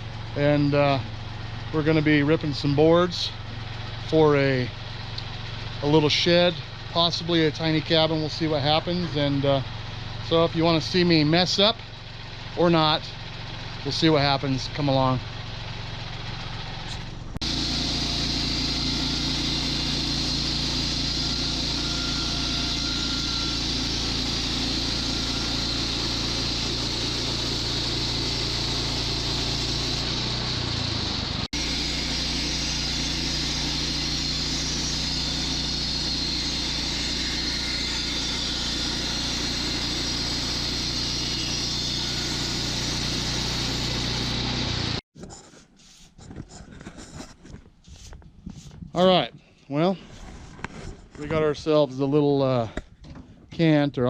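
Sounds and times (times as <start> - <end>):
sawmill engine running: 0.0 - 45.0
band blade sawing log: 16.8 - 46.2.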